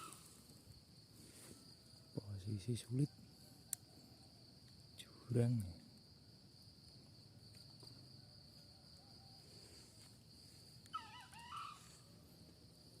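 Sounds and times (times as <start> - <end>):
wavering bird call: 0.0 - 0.3, 10.9 - 12.1
insects droning: 0.0 - 13.0.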